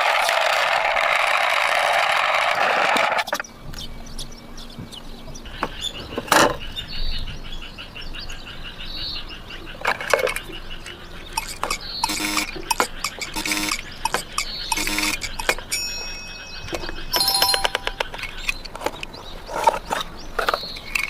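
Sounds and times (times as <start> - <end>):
short high chirps: 15.7 - 18.1.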